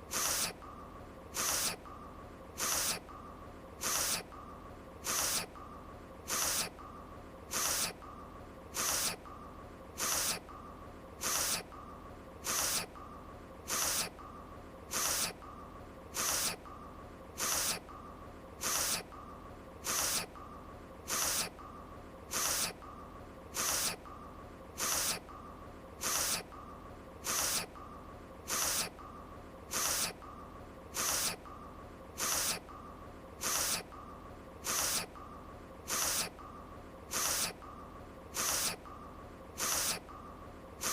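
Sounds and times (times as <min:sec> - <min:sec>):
woman sniffing: 0:00.1 - 0:00.6, 0:01.4 - 0:01.8, 0:02.6 - 0:03.0, 0:03.8 - 0:04.3, 0:05.0 - 0:05.5, 0:06.3 - 0:06.7, 0:07.5 - 0:08.0, 0:08.8 - 0:09.2, 0:10.0 - 0:10.4, 0:11.2 - 0:11.7, 0:12.4 - 0:12.9, 0:13.7 - 0:14.1, 0:14.9 - 0:15.4, 0:16.2 - 0:16.6, 0:17.4 - 0:17.8, 0:18.6 - 0:19.1, 0:19.8 - 0:20.3, 0:21.1 - 0:21.5, 0:22.3 - 0:22.8, 0:23.6 - 0:24.0, 0:24.8 - 0:25.2, 0:26.0 - 0:26.5, 0:27.2 - 0:27.7, 0:28.5 - 0:28.9, 0:29.7 - 0:30.2, 0:31.0 - 0:31.4, 0:32.2 - 0:32.6, 0:33.4 - 0:33.9, 0:34.6 - 0:35.1, 0:35.9 - 0:36.3, 0:37.1 - 0:37.6, 0:38.4 - 0:38.8, 0:39.6 - 0:40.0.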